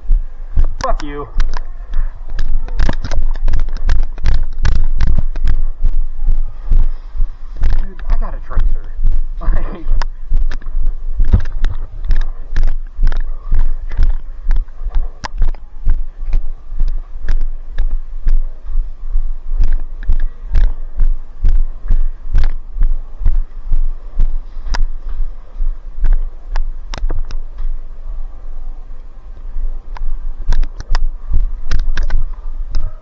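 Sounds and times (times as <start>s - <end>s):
footsteps thumping: 0.0s - 27.8s.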